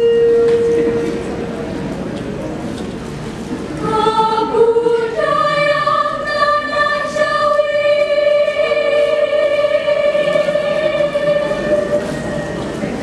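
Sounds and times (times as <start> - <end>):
school choir singing: 3.8 - 12.7.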